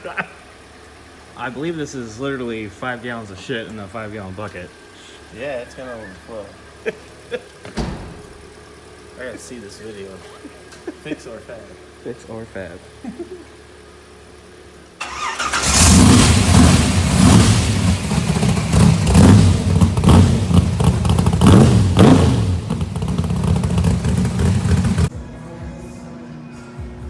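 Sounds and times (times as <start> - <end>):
car engine revving: 15.0 - 25.1.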